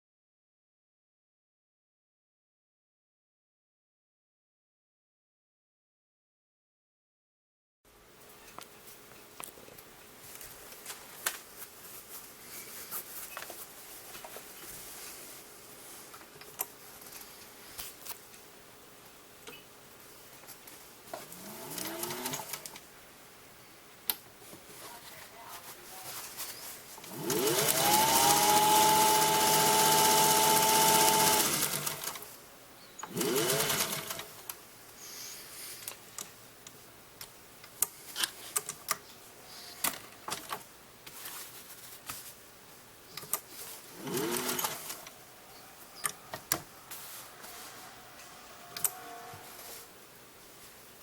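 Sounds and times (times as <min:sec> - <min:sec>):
sewing machine running: 0:21.4 - 0:22.7, 0:27.0 - 0:32.3, 0:33.1 - 0:34.3, 0:44.0 - 0:45.1
sewing machine clicks: 0:21.5 - 0:22.8, 0:27.0 - 0:32.3, 0:33.0 - 0:34.3, 0:44.0 - 0:45.1.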